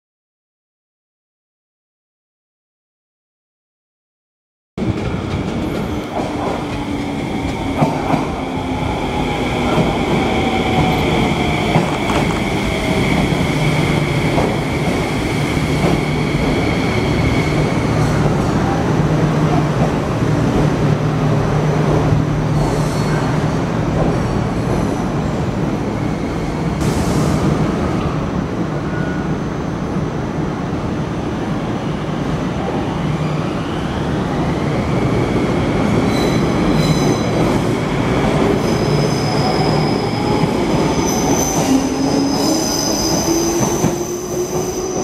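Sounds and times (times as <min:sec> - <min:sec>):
train wheels squealing: 0:22.6 - 0:23.5, 0:35.8 - 0:37.8, 0:38.4 - 0:45.0.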